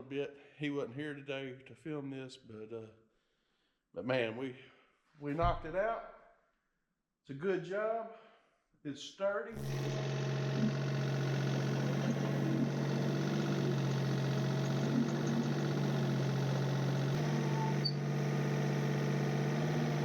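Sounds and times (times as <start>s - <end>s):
excavator engine idling: 9.6s - 20.0s.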